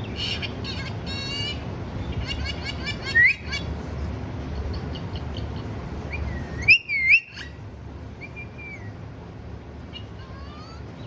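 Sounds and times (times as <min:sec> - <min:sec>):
parrot chirps: 0:00.1 - 0:03.7
parrot whistling: 0:03.0 - 0:03.6, 0:06.1 - 0:07.5.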